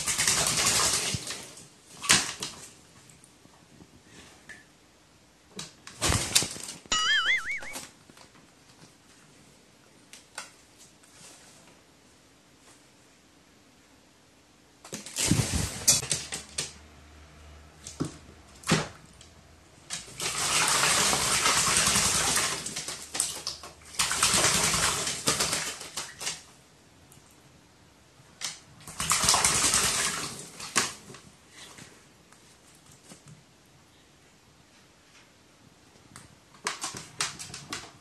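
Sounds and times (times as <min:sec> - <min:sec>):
bird splashing water: 0:28.8 - 0:31.0.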